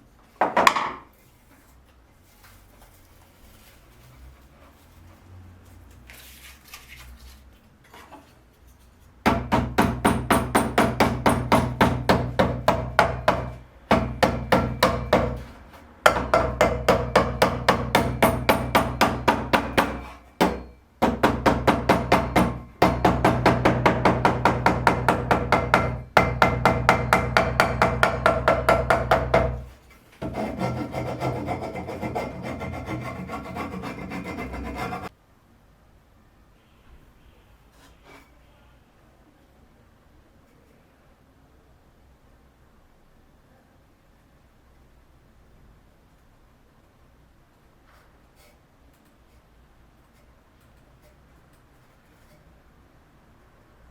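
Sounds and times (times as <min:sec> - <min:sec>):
smooth rubbing on wood: 0:30.2 - 0:35.1
wood being rasped by hand: 0:30.2 - 0:35.1.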